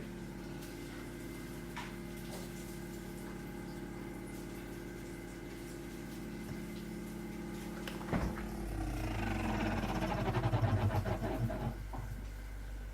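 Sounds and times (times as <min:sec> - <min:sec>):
fridge-freezer humming: 0:00.0 - 0:12.9
rapid rattling buzz: 0:08.2 - 0:12.2.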